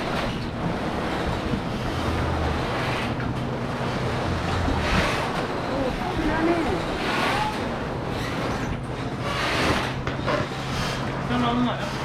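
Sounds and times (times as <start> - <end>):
wind buffeting microphone: 0.0 - 9.0
low engine hum: 0.0 - 9.1
water slapping at dock: 0.0 - 12.0.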